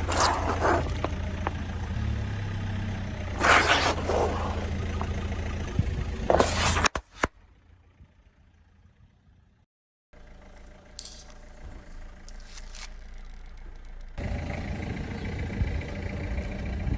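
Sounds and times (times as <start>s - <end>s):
light scrapes: 0.0s - 1.5s, 3.4s - 5.2s, 6.3s - 7.2s
car engine idling: 0.0s - 9.6s, 10.2s - 16.9s.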